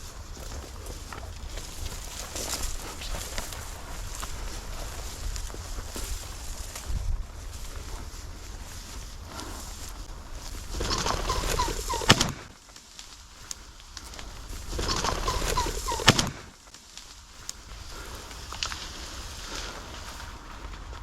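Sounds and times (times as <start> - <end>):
rushing wing noise: 0.0 - 21.0
pheasant cackling calls: 10.4 - 12.5, 14.3 - 16.6
sharp crack: 10.6 - 19.8.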